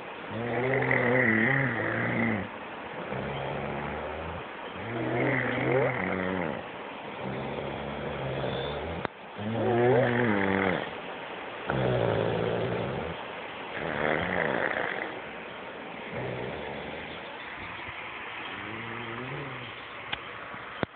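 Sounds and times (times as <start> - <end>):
person snoring loudly: 0.3 - 6.6, 7.2 - 10.9, 11.7 - 13.2, 13.8 - 15.2, 16.1 - 17.1.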